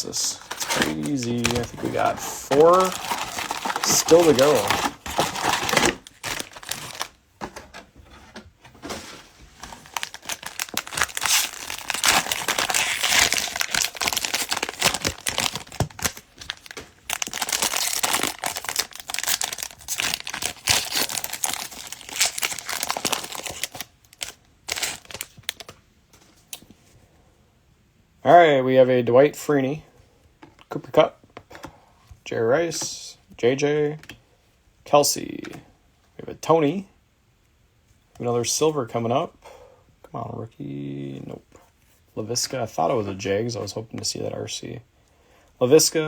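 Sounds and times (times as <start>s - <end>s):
cellophane wrapper crinkling: 0.2s - 7.2s, 9.5s - 25.8s.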